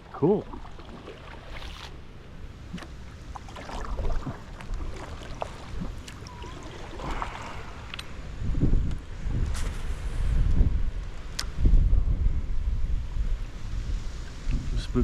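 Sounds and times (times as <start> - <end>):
kayak splashing and dripping: 0.0 - 8.2
wind rumble on microphone: 0.0 - 15.0.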